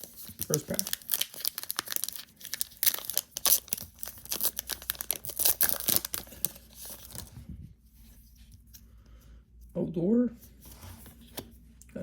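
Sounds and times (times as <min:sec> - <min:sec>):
wrapper being torn and crinkled: 0:00.0 - 0:07.3.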